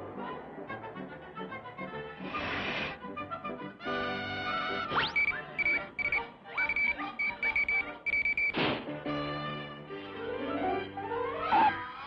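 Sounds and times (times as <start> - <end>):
short high electronic beeps: 5.0 - 8.5.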